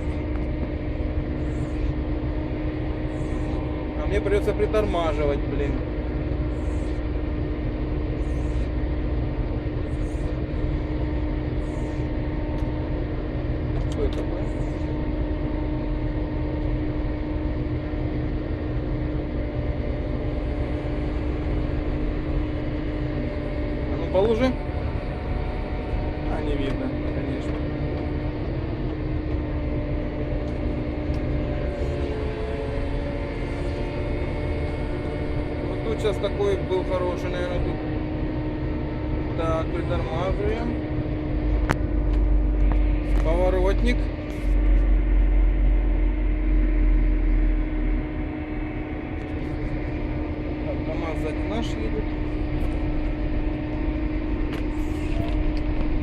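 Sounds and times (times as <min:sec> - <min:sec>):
vehicle engine and road rumble: 0:00.0 - 0:56.0.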